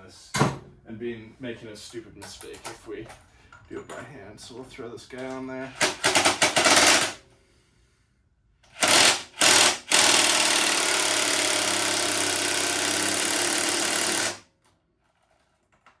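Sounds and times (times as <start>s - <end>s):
impact driver hammering: 5.8s - 7.2s, 8.7s - 14.4s.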